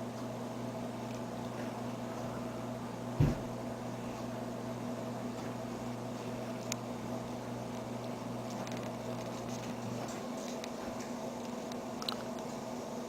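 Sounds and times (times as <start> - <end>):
steady mechanical hum: 0.0 - 13.0
dull thump: 3.2 - 3.6.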